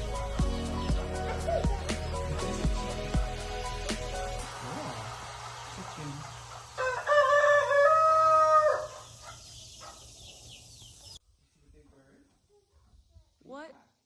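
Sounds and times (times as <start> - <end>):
steady hiss: 1.9 - 10.0
rooster crowing: 6.2 - 9.5.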